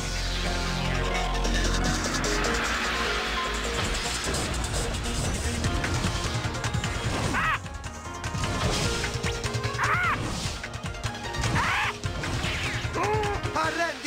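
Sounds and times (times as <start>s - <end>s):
background music: 0.0s - 14.0s.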